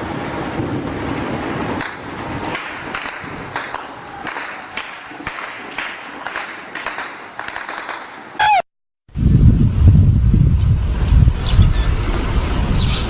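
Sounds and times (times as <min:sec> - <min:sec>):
sharp cracks or pops: 0:01.8 - 0:08.1
whistle-like tone bending in pitch: 0:08.4 - 0:08.7.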